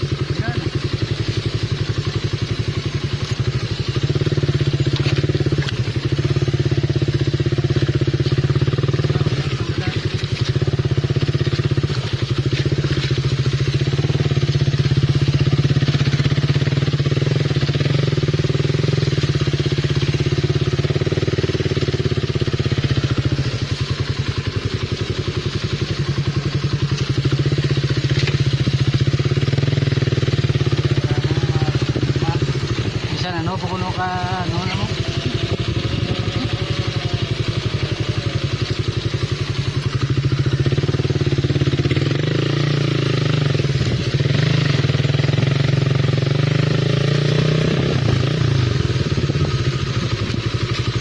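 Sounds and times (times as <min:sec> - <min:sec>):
motorcycle engine running: 0:00.0 - 0:51.0.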